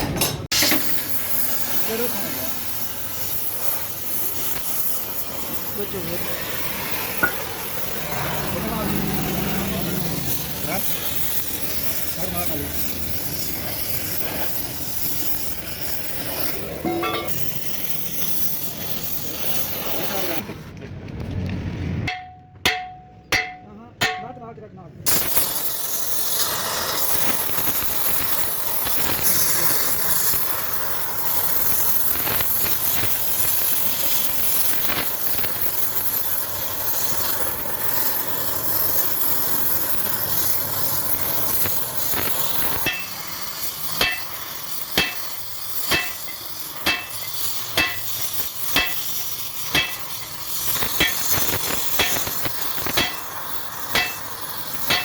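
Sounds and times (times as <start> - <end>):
steady hiss: 0.5 - 20.5, 25.1 - 55.0
hammer blows on metal: 22.1 - 24.4, 44.0 - 44.4, 45.0 - 53.3, 53.9 - 54.3.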